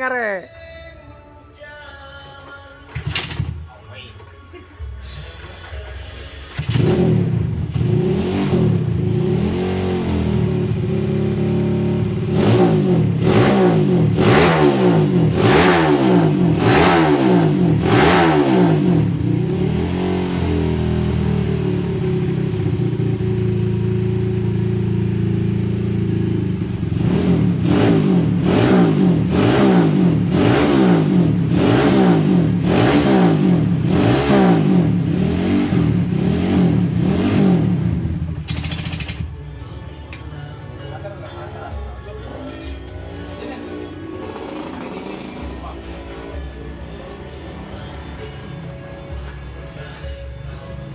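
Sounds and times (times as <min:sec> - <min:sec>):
motorcycle engine revving: 0:06.4 - 0:39.4, 0:43.4 - 0:46.6.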